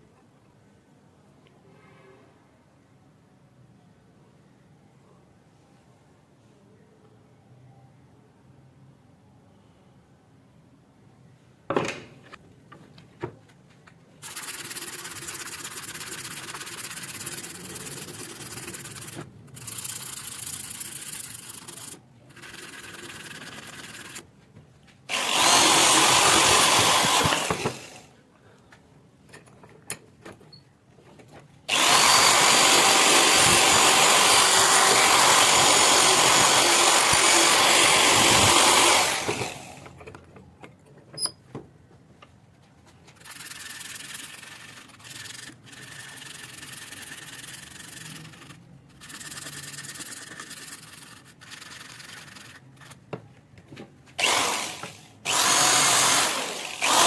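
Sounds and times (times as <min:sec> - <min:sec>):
power tool grinding metal: 0:25.1 - 0:28.0, 0:31.7 - 0:39.8, 0:54.2 - 0:57.0.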